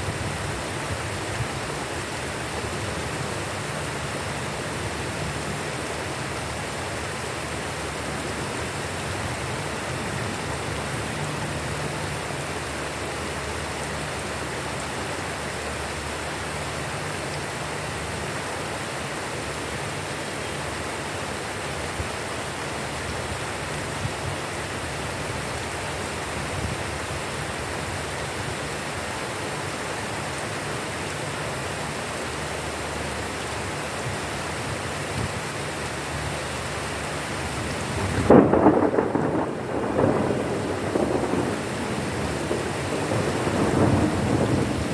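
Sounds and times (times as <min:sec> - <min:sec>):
steady rain falling: 0:00.0 - 0:44.9
raindrop ticks: 0:17.2 - 0:17.6.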